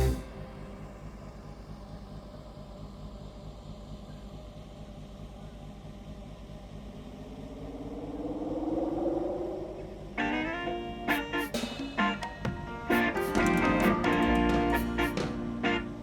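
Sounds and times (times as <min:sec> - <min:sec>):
vehicle engine running: 0:00.0 - 0:08.1.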